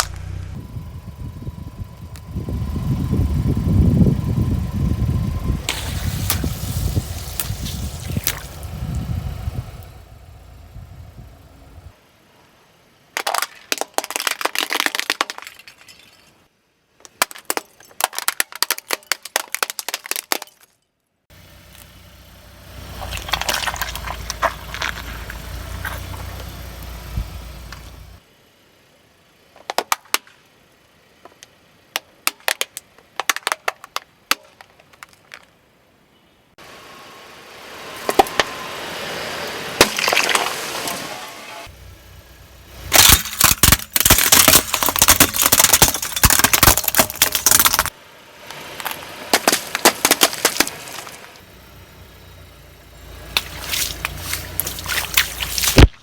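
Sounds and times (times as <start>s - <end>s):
objects crunching under car tyres: 0.0s - 0.6s, 4.6s - 9.9s, 13.2s - 16.4s, 22.7s - 28.2s, 38.0s - 41.7s, 42.7s - 56.0s
low rumble of car rolling: 0.0s - 13.2s, 21.3s - 56.0s.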